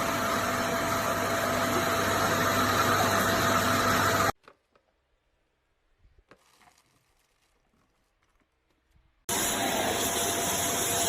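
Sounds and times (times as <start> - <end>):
vacuum cleaner running: 0.0 - 4.3, 9.3 - 11.0.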